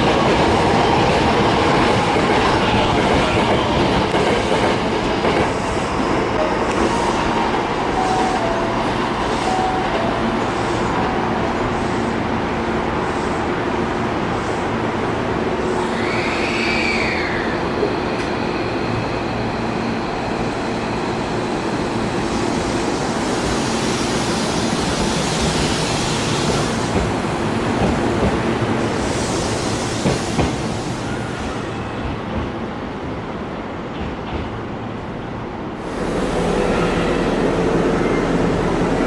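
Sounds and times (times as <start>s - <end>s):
electric train rumbling past: 0.0s - 39.0s
high squeal: 15.8s - 26.8s.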